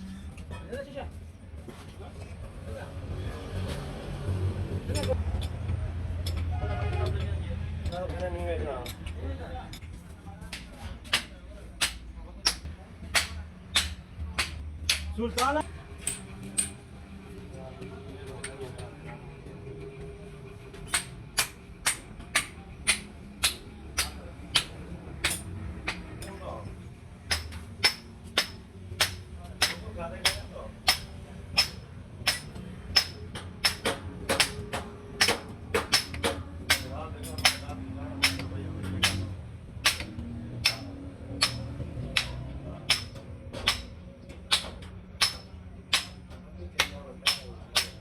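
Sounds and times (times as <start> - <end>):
hammer striking metal: 10.5 - 16.8, 20.8 - 26.4, 27.3 - 48.0.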